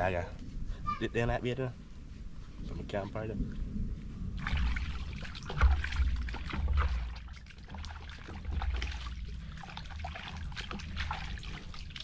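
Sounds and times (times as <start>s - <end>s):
water splashing and trickling: 4.3s - 12.0s.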